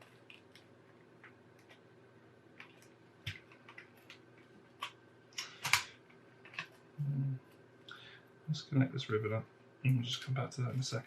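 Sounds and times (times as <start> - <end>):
plastic parts clicking and tapping: 2.6 - 6.8.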